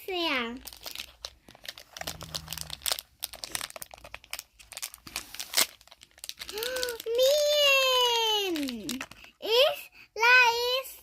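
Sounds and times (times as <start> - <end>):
child's voice: 0.0 - 0.6, 6.5 - 11.0
packaging crackling and rustling: 0.5 - 9.4.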